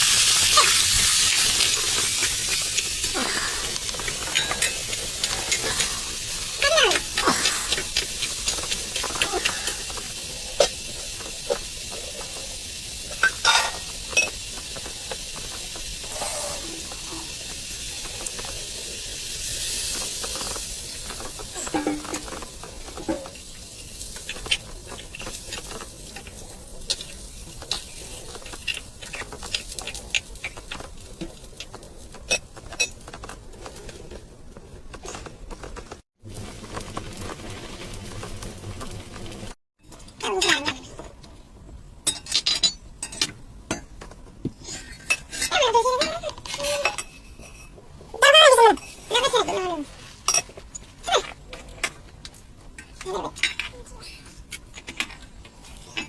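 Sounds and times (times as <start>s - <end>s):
food sizzling in a pan: 0.0s - 33.2s, 36.2s - 39.6s, 44.6s - 54.7s
metal spoon scraping a pan: 3.7s - 6.4s, 21.6s - 29.7s, 44.7s - 47.8s.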